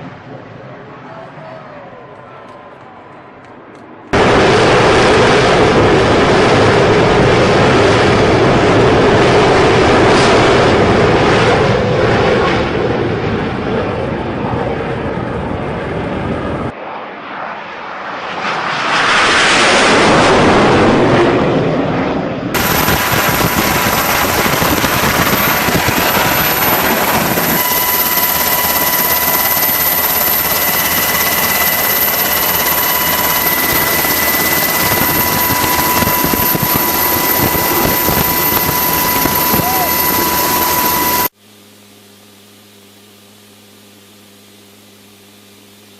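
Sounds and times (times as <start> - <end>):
aircraft engine rush: 0.0 - 41.4
high whine tones: 22.5 - 45.9.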